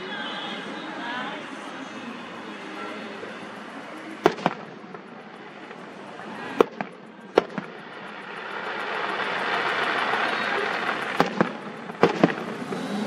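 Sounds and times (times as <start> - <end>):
steady noisy wash: 0.0 - 13.0
echoing bangs: 4.2 - 5.8, 6.5 - 13.0
fireworks bangs: 4.2 - 5.8, 6.5 - 13.0.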